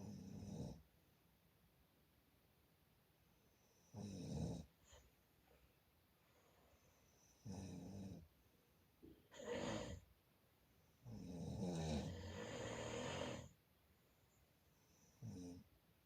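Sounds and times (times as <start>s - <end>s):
person snoring: 9.3s - 10.0s, 11.1s - 13.6s.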